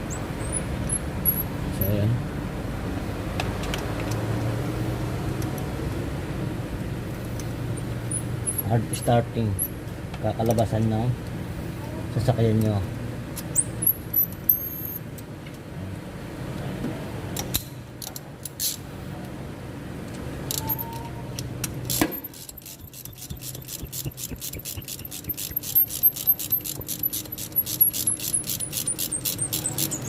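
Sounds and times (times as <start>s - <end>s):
ratchet wrench clicking: 21.8s - 30.0s.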